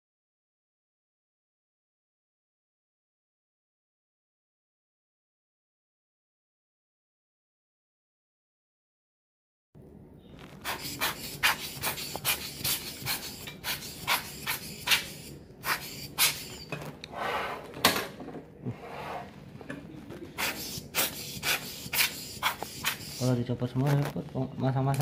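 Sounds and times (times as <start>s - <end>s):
hands rubbing computer parts: 10.4s - 16.7s, 20.1s - 24.3s.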